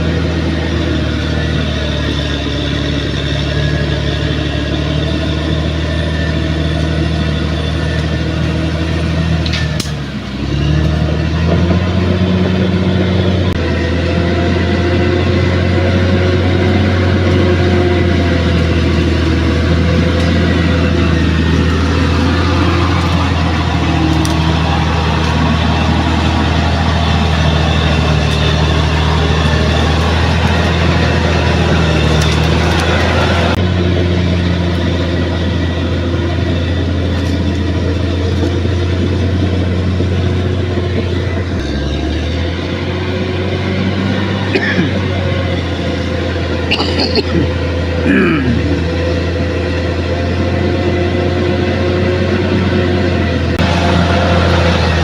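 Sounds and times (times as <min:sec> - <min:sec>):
bulldozer diesel engine running: 0:00.0 - 0:55.0.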